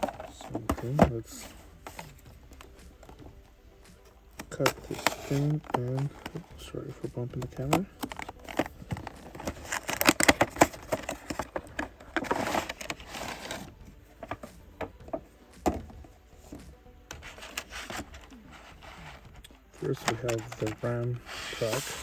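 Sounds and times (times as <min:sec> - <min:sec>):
packaging clicks and crackles: 0:04.4 - 0:06.5, 0:07.2 - 0:15.2, 0:17.1 - 0:22.0
packaging rustling scrape: 0:04.6 - 0:06.4, 0:08.0 - 0:13.8, 0:17.2 - 0:22.0.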